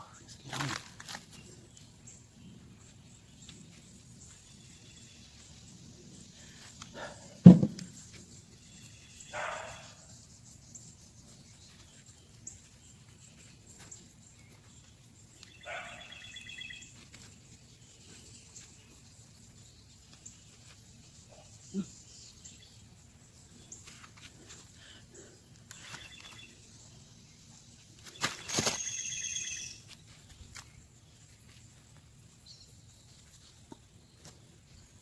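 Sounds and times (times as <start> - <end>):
heavy thud from digging soil: 7.4 - 8.0.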